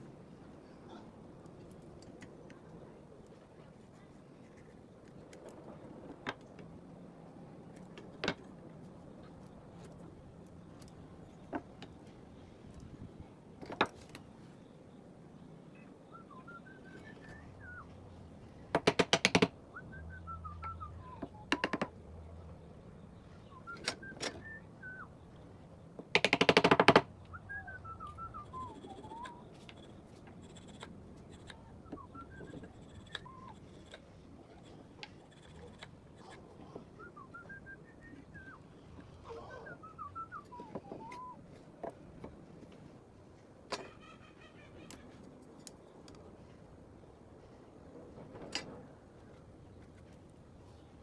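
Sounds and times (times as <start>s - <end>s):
birds chirping faintly: 19.6s - 26.0s.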